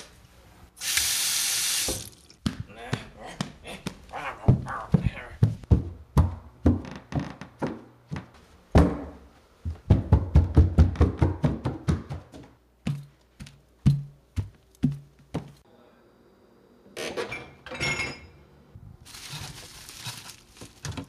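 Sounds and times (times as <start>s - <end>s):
heavy thuds and knocks: 4.5s - 6.9s, 8.7s - 13.1s.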